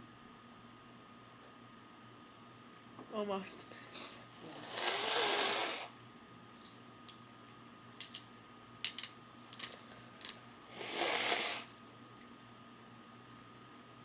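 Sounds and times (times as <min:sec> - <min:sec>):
noisy breath through nose: 0:03.8 - 0:06.0, 0:10.7 - 0:11.8.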